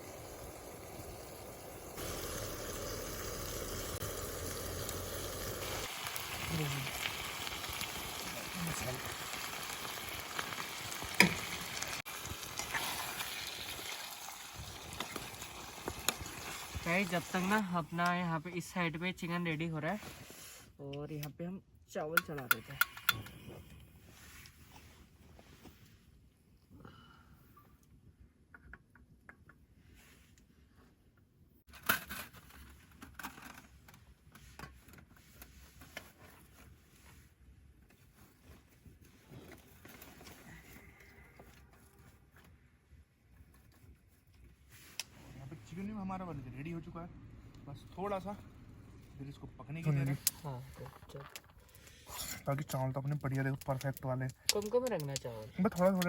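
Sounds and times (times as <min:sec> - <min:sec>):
chicken sizzling in a pan: 0:00.0 - 0:17.6
campfire crackles: 0:00.0 - 0:18.7, 0:49.8 - 0:56.0.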